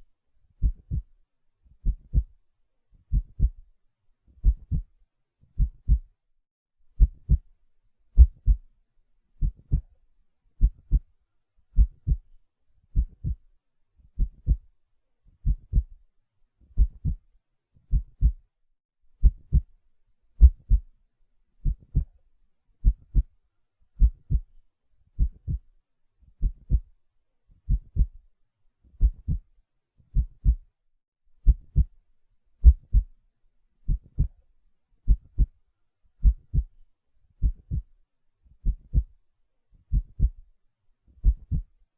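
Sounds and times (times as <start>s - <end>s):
slow heartbeat: 0.6s - 1.1s, 1.8s - 2.3s, 3.1s - 3.6s, 4.4s - 4.9s, 5.6s - 6.2s, 7.0s - 7.5s, 8.2s - 8.7s, 9.4s - 9.9s, 10.6s - 11.1s, 11.8s - 12.3s, 12.9s - 13.4s, 14.2s - 14.7s, 15.4s - 16.0s, 16.7s - 17.2s, 17.9s - 18.5s, 19.2s - 19.7s, 20.4s - 20.9s, 21.6s - 22.2s, 22.8s - 23.3s, 24.0s - 24.5s, 25.2s - 25.7s, 26.4s - 26.9s, 27.7s - 28.2s, 29.0s - 29.5s, 30.1s - 30.8s, 31.4s - 32.0s, 32.6s - 33.1s, 33.9s - 34.4s, 35.1s - 35.5s, 36.2s - 36.8s, 37.4s - 37.9s, 38.6s - 39.2s, 39.9s - 40.5s, 41.2s - 41.7s.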